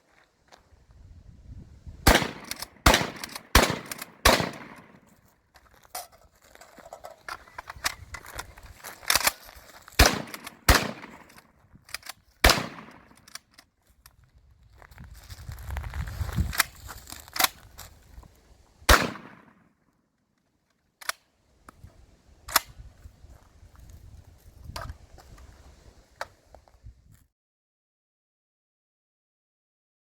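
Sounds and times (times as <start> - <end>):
shotgun shots: 2.0 - 5.1, 10.0 - 11.4, 12.4 - 13.3, 18.9 - 19.6.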